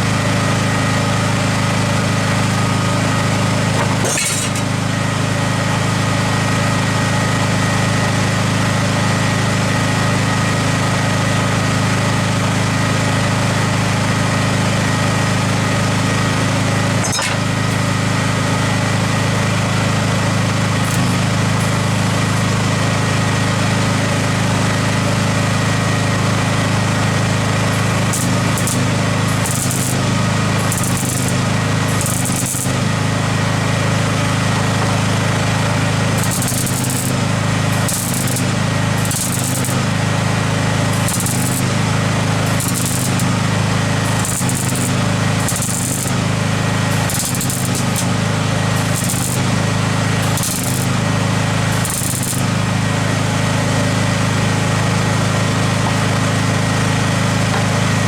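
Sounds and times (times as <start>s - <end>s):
welding arc crackling and hissing: 3.5s - 4.9s, 19.9s - 22.7s, 26.5s - 53.3s.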